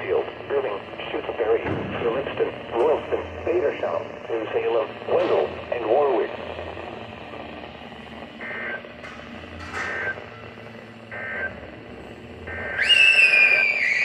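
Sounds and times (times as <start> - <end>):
shrill two-tone digital screeches: 12.5 - 14.0.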